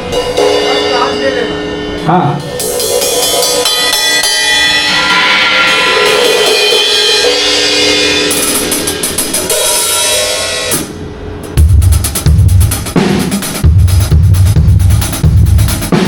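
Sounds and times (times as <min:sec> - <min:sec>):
band playing sustained chords: 0:00.0 - 0:12.7
drum cymbals washing: 0:00.0 - 0:16.0.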